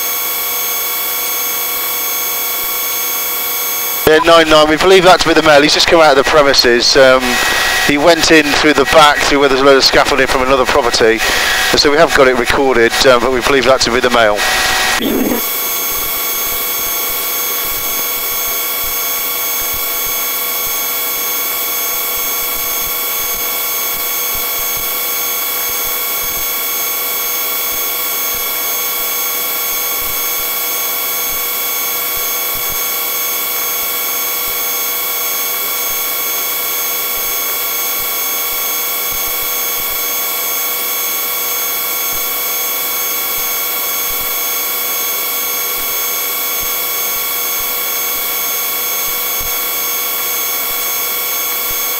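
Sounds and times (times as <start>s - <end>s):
high turbine whine: 3.6s - 18.1s
helicopter turbine drone: 4.1s - 16.7s.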